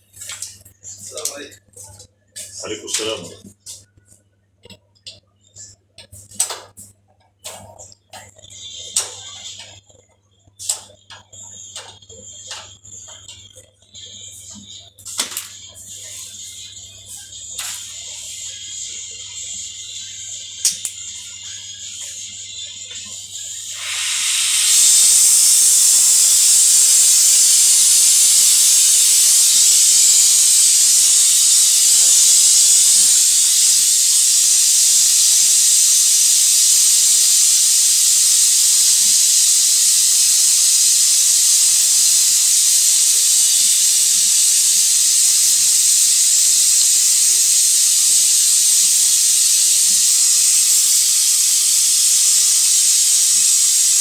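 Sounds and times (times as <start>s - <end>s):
pressurised gas hissing: 15.8s - 54.0s.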